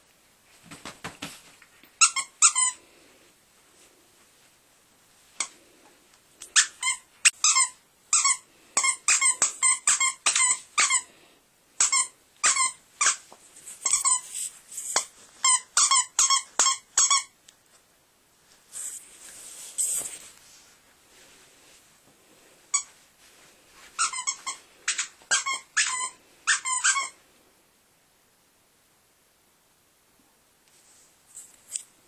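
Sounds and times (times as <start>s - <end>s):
dog's squeaky toy squeaking: 2.0s - 2.8s, 6.5s - 11.1s, 11.8s - 13.2s, 13.8s - 14.3s, 15.0s - 17.3s, 24.0s - 27.2s.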